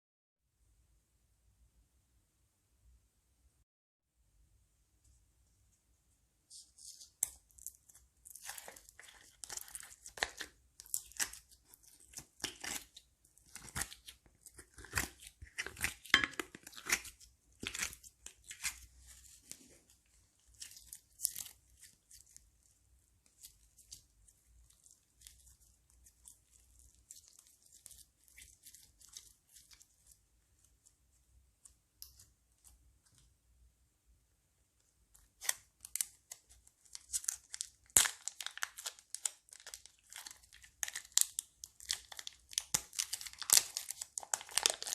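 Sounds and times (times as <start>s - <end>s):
crunchy slime crackling by hand: 6.8s - 30.9s, 35.2s - 44.9s.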